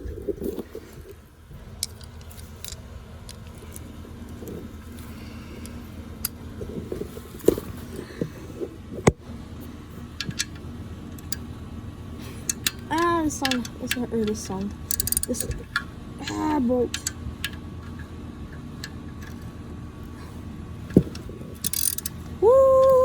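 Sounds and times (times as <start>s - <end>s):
low steady rumble: 0.0s - 23.0s
ratchet clinking on bolts: 10.2s - 11.5s, 12.4s - 19.5s, 20.9s - 22.9s.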